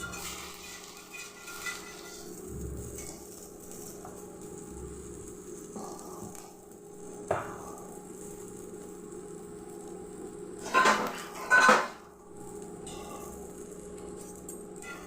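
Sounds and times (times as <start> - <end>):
kitchen utensils and dishes clattering: 0.0 - 2.4, 10.6 - 12.0.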